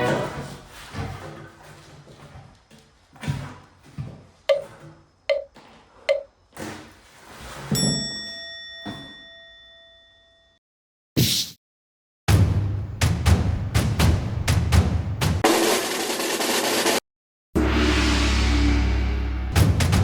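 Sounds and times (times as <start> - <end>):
bell-like metallic ring: 7.8 - 10.6.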